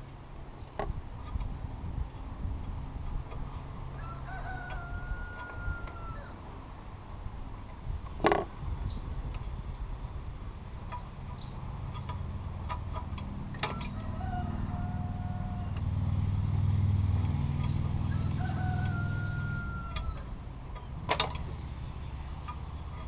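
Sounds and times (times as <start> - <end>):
low rumble: 0.8 - 23.0
rooster crowing: 3.9 - 6.4, 13.7 - 15.8, 18.0 - 20.3.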